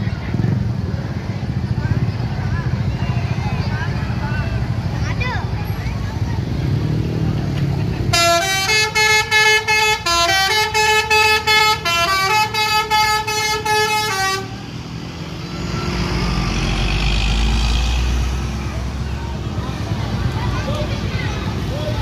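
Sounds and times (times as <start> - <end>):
heavy vehicle rumbling past: 0.0 - 22.0
bus musical horn tune: 8.1 - 14.7.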